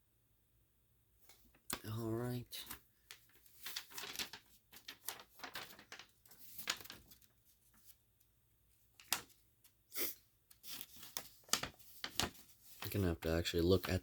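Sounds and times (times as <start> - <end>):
paper rustling: 1.2 - 8.1, 8.8 - 9.8, 10.5 - 14.0.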